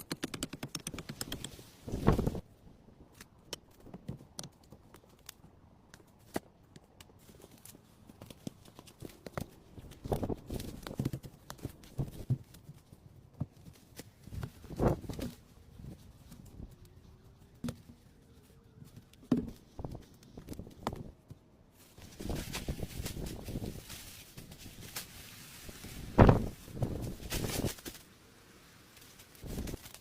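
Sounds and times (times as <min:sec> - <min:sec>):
handling knocks and clicks: 0:00.0 - 0:01.6
rustling: 0:21.7 - 0:30.0.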